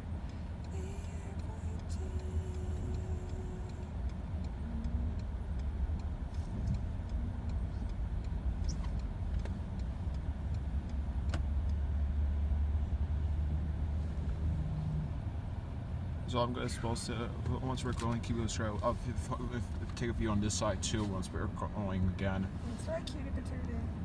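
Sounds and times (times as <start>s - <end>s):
car cabin rumble: 0.0s - 11.9s
faint ticking: 0.1s - 12.0s.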